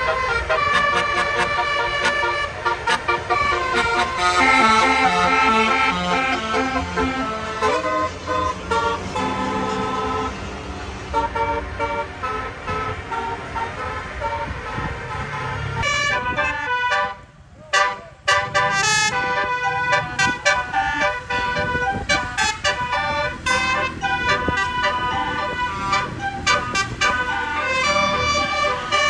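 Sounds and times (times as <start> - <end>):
bus engine running: 0.0 - 29.0
musical air horn playing a tune: 0.0 - 29.0.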